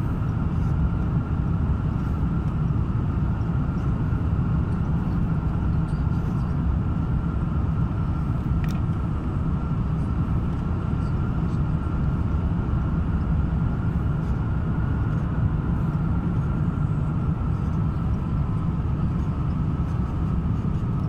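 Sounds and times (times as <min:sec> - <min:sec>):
faint steady whine: 0:00.0 - 0:21.0.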